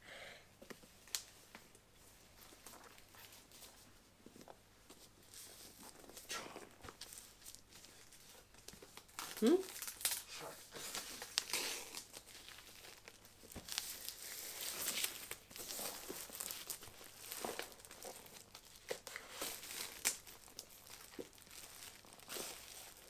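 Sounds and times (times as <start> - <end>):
packaging crinkling: 5.3 - 23.0.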